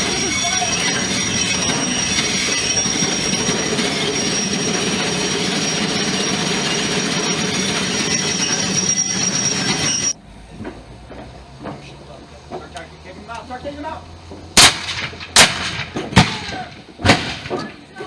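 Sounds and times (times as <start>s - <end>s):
high wheel squeal: 0.0s - 10.2s
train rumble and clatter on rails: 0.0s - 18.0s.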